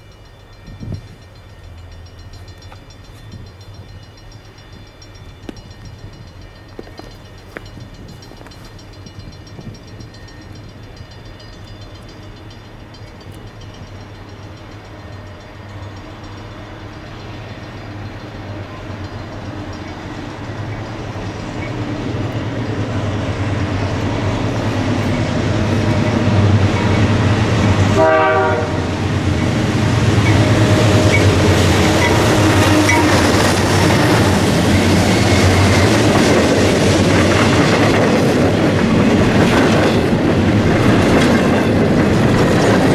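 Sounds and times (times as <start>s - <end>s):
diesel freight train passing: 0.0s - 42.9s
train horn blast: 27.7s - 29.2s, 30.3s - 33.4s
wheels clacking over rails: 29.1s - 42.9s.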